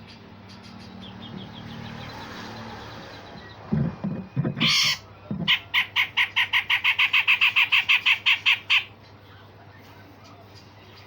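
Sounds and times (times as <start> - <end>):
bird harsh rapid notes: 2.7 - 8.9
bird rasping call: 4.4 - 8.9.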